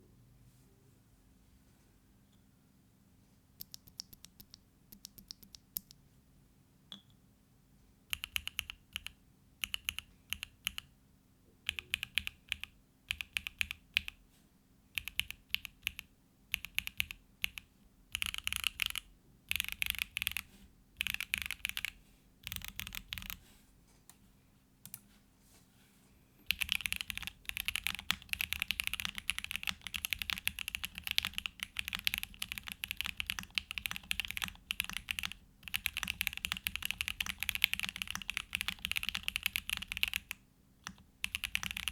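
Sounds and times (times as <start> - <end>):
mechanical keyboard typing: 3.6 - 6.0, 8.1 - 10.9, 11.7 - 14.2, 15.0 - 23.4, 26.5 - 41.9.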